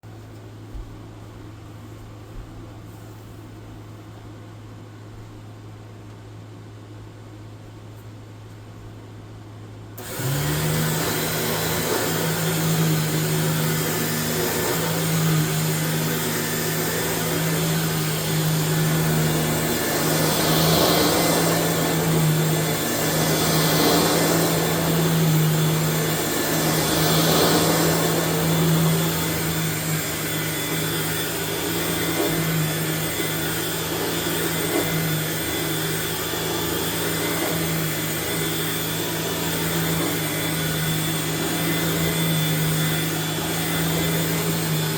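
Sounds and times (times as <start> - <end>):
stick vacuum running: 10.0 - 44.9.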